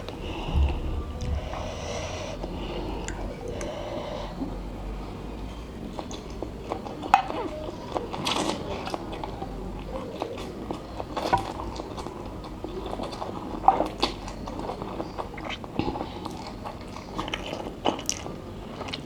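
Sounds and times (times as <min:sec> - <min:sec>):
wet chewing and mouth smacks: 0:00.0 - 0:03.8, 0:05.9 - 0:19.0
slurping: 0:00.0 - 0:19.0.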